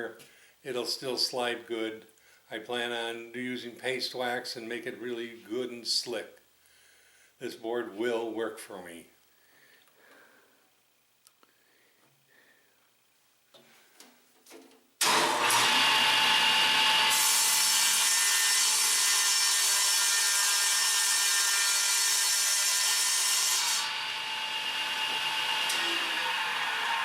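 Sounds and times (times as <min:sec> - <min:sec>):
electric saw motor whine: 0:15.0 - 0:20.2, 0:23.8 - 0:27.0
saw blade ripping through board: 0:15.0 - 0:24.0, 0:25.4 - 0:27.0.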